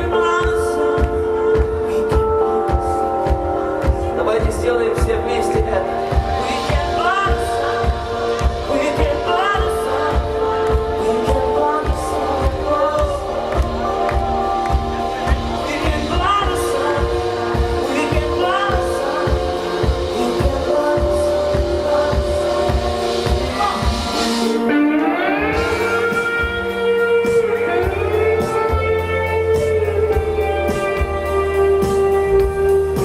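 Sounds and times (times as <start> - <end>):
drum beat: 0.0 - 24.7
guitar: 0.0 - 33.0
person singing: 0.0 - 33.0.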